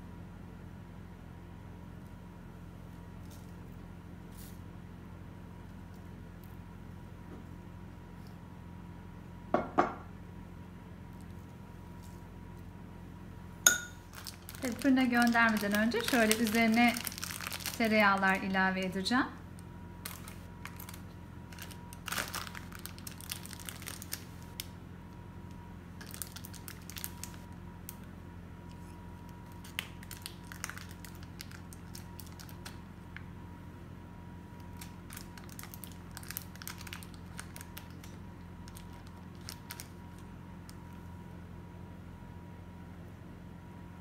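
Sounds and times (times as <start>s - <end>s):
butter wrapper crinkling: 14.0s - 18.5s, 20.0s - 24.7s, 26.0s - 28.1s, 29.2s - 32.9s, 34.6s - 41.0s.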